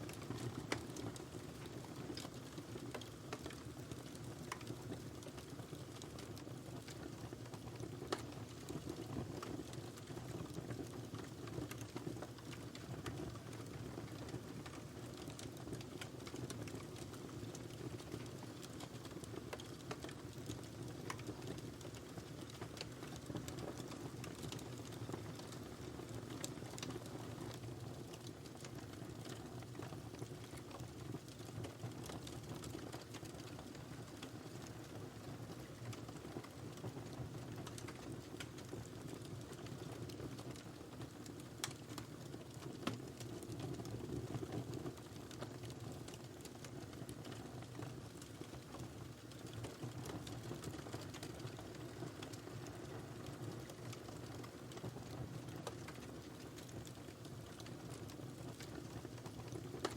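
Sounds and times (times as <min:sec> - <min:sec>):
fire crackling and popping: 0:00.1 - 0:59.9.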